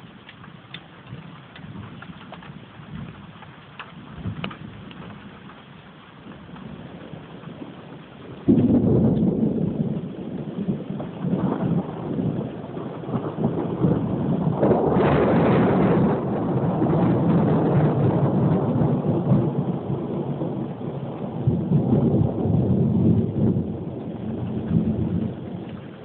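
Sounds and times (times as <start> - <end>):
steady rain: 0.0 - 26.0
thunder rolling: 0.0 - 26.0
sharp thunder crack: 6.7 - 26.0.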